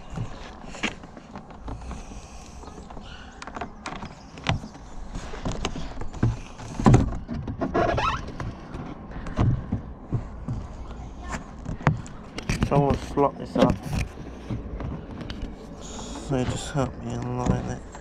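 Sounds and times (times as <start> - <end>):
short creak: 1.5 - 8.5.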